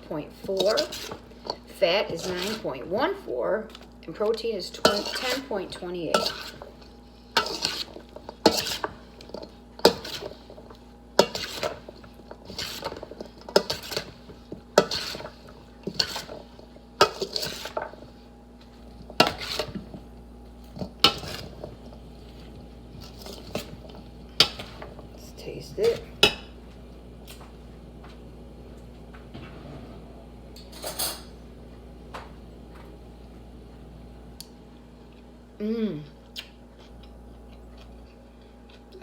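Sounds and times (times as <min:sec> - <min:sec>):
utensil scraping and knocking bowl: 0:00.4 - 0:02.8, 0:04.7 - 0:06.8, 0:07.4 - 0:18.1, 0:18.9 - 0:20.1, 0:20.7 - 0:25.2.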